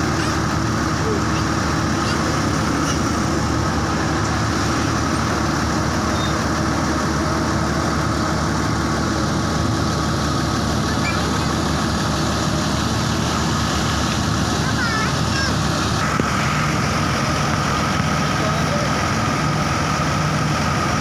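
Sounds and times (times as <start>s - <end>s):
roadside traffic noise: 0.0s - 21.0s
vehicle engine running: 0.0s - 21.0s.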